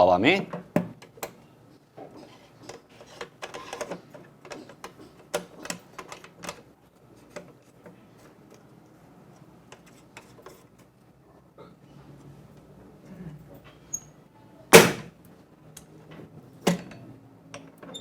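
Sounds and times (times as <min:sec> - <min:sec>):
prying tools clicking and scraping: 0:01.0 - 0:08.7.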